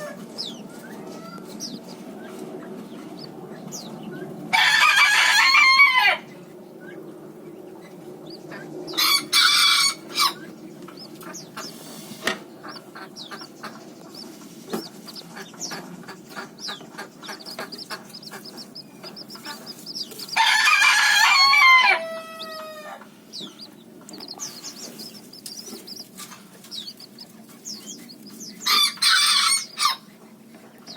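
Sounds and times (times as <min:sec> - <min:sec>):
chicks peeping: 0:00.0 - 0:30.9
rooster crowing: 0:04.5 - 0:06.3, 0:08.9 - 0:10.4, 0:20.3 - 0:23.1, 0:28.6 - 0:30.1.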